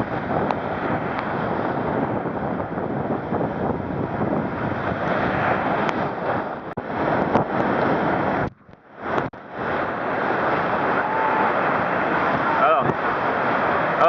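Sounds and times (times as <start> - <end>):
ocean surf: 0.0 - 14.0
wind buffeting microphone: 0.0 - 14.0.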